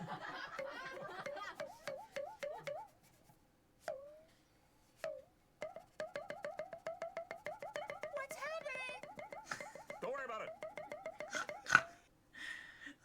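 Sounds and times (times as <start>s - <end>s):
electronic bloop notes: 5.7s - 11.9s.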